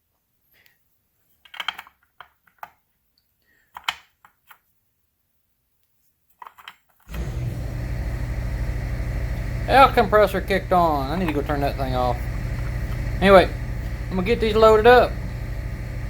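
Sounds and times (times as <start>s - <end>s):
air compressor running: 7.1s - 16.0s.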